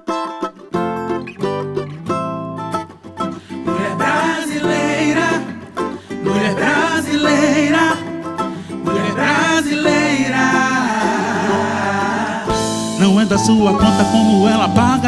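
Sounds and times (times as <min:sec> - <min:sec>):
plucked strings: 0:00.0 - 0:15.0
voices singing: 0:03.5 - 0:15.0.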